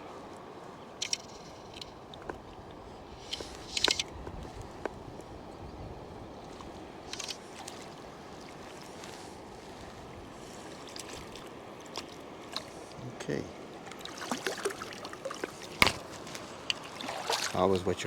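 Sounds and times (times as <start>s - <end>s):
river water rushing: 0.0s - 18.0s
fishing tackle clicking: 0.3s - 5.4s, 6.5s - 8.1s.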